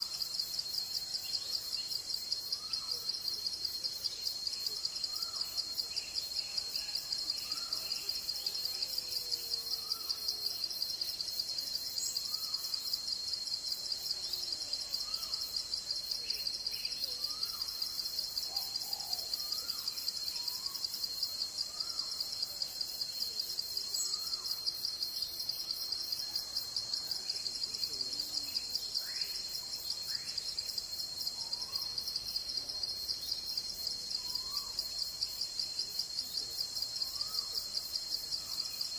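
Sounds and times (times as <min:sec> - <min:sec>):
insects trilling: 0:00.0 - 0:38.9.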